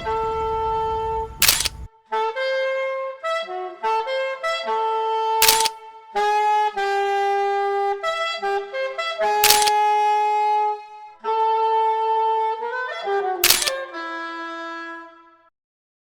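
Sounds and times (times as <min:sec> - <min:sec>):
solo saxophone: 0:02.2 - 0:05.4.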